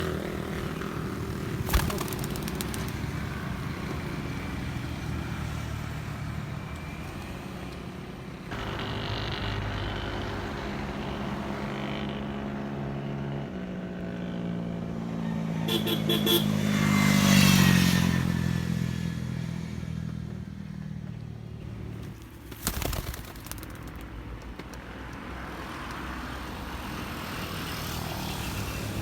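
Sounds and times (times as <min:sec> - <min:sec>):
quick run of clicks: 0:01.6 - 0:03.1, 0:22.0 - 0:26.0
vehicle engine running: 0:08.5 - 0:12.3.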